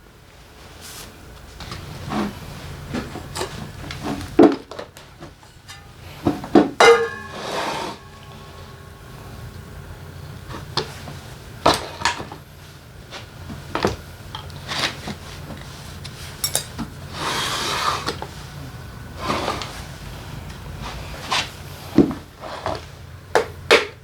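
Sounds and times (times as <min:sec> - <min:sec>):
metal part scraping slide: 0:05.6 - 0:09.0
metal parts clinking and knocking: 0:16.4 - 0:16.8.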